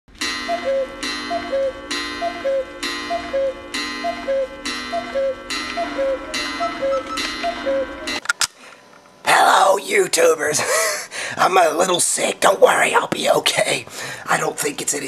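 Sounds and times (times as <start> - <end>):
electronic ticking chime loop: 0.2 - 8.2.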